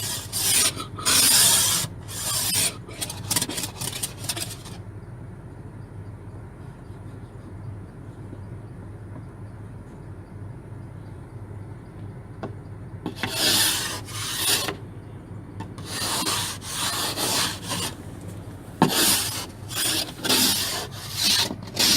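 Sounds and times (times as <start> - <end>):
ice scraper scraping ice: 0.0 - 4.8, 13.1 - 14.8, 15.8 - 18.0, 18.8 - 21.9.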